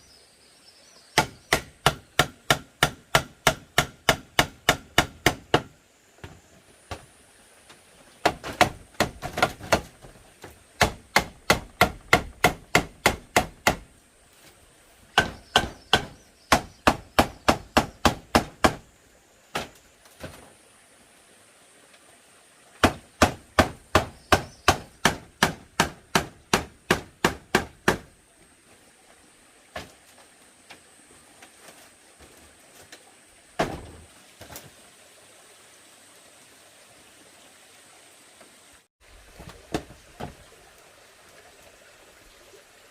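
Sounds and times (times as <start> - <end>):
hand tool striking bamboo: 1.2 - 5.7, 8.2 - 10.0, 10.8 - 13.9, 15.1 - 18.8, 22.8 - 28.1.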